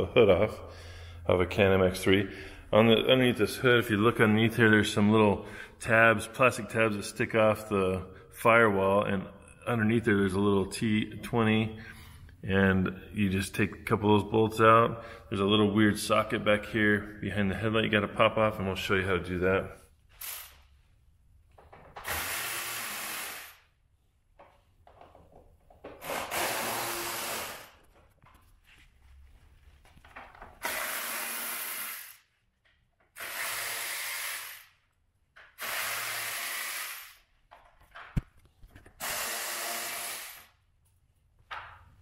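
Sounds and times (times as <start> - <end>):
power drill running: 22.0 - 23.6, 26.0 - 27.8, 30.6 - 32.2, 33.2 - 34.7, 35.6 - 37.3, 39.0 - 40.6.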